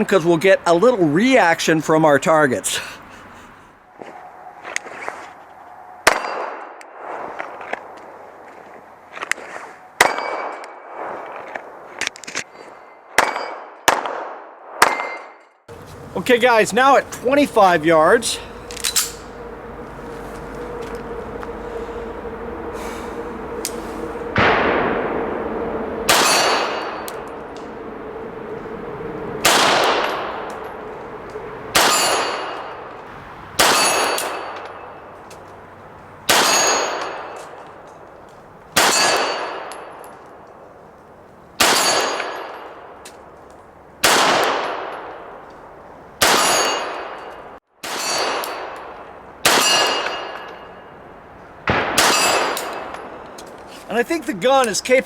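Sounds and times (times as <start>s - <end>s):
pistol shots with ringing tail: 6.1s - 6.7s, 10.0s - 11.1s, 13.2s - 15.4s, 26.1s - 27.3s, 31.7s - 32.8s, 33.6s - 35.0s, 36.3s - 37.4s, 38.8s - 40.0s, 41.6s - 42.8s, 46.2s - 50.9s, 51.7s - 53.2s
bullets clanging on steel plates: 47.9s - 48.7s.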